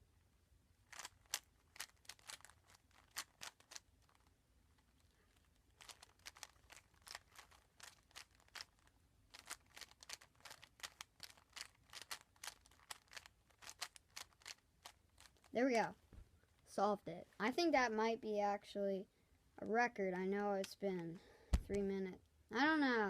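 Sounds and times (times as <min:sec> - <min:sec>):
speed cube plastic clicks: 0:00.9 - 0:04.3, 0:05.4 - 0:15.5.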